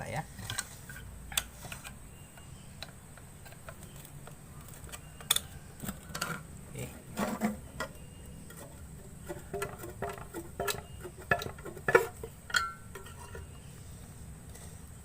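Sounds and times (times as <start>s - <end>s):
metallic clinks and knocks: 9.5s - 13.5s.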